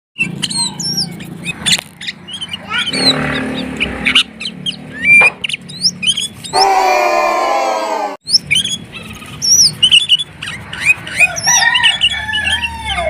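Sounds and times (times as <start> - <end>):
bird singing chirps and whistles: 0.2 - 6.6, 8.2 - 13.0.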